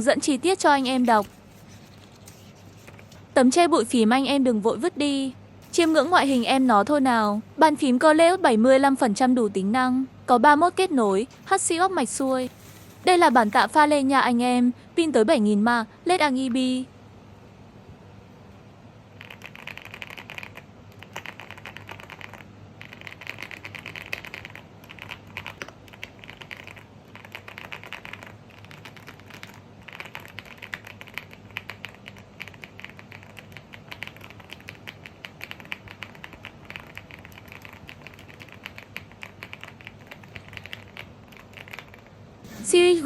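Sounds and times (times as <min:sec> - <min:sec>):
mechanical keyboard typing: 0:19.2 - 0:42.1.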